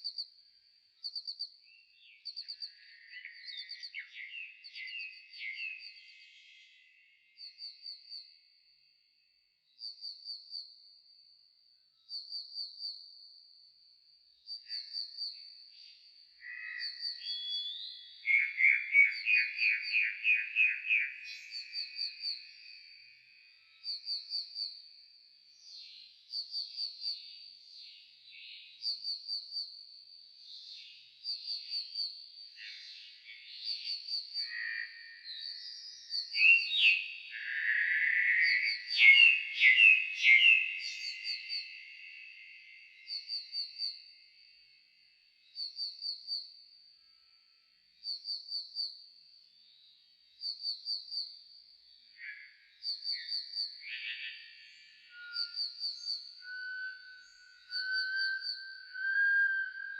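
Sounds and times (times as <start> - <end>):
slowed nightingale song: 0.0 - 59.9
slowed-down birdsong: 49.4 - 59.9.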